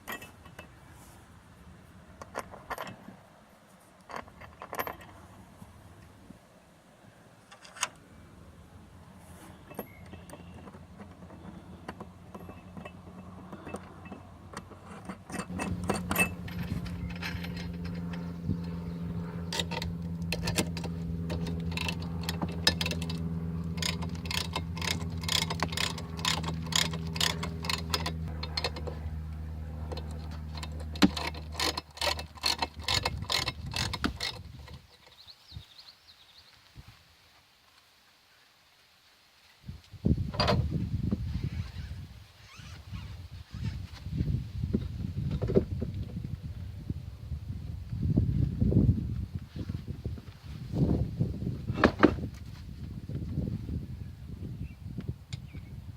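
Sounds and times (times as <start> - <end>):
sharp clicks and rattles: 9.7 - 29.1, 29.8 - 35.2.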